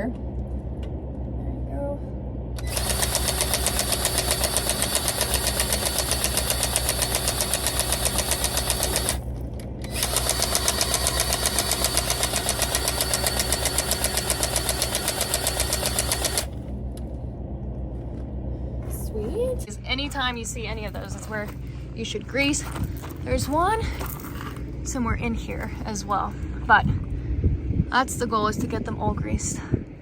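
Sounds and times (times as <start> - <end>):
grease gun pumping: 2.6 - 9.2, 9.8 - 16.5.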